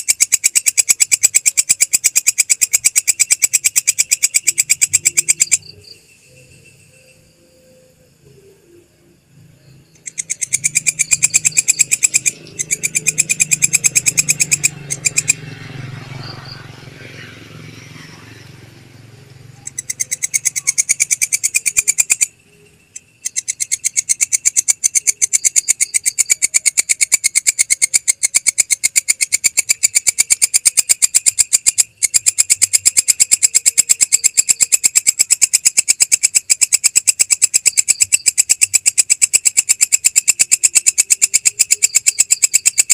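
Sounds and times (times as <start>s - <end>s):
katydid stridulating: 0.0s - 42.9s.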